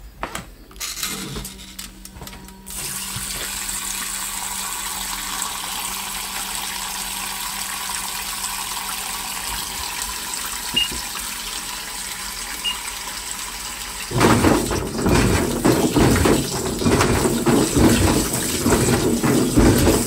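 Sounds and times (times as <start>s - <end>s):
washing machine hum: 0.0s - 20.0s
water rushing into drum: 2.7s - 20.0s
washing machine clicks: 10.7s - 11.1s, 14.1s - 20.0s.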